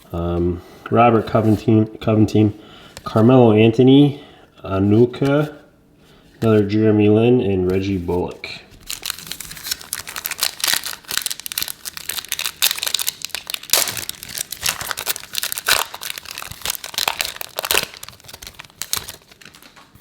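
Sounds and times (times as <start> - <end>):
wrapper tearing and crinkling: 8.7 - 20.0.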